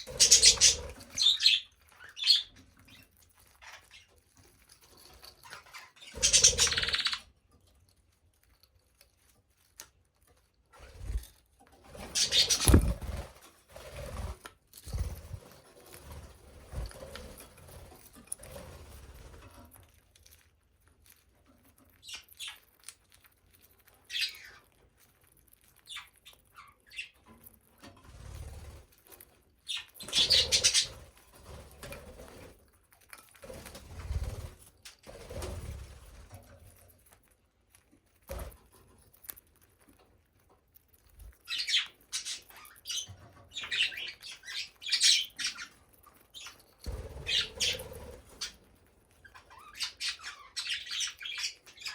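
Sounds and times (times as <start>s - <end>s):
wing fluttering: 0.0s - 1.6s, 5.8s - 7.2s, 10.8s - 19.7s, 30.0s - 32.6s, 33.4s - 36.6s, 46.4s - 48.6s
budgerigars chirping: 0.0s - 2.6s, 5.5s - 7.2s, 12.1s - 13.0s, 24.1s - 24.6s, 29.7s - 31.0s, 41.5s - 48.6s, 49.3s - 51.9s.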